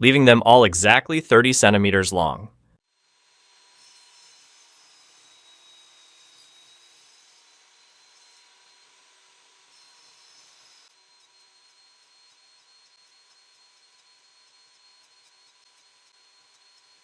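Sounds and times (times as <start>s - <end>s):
power saw cutting wood: 3.2s - 14.8s.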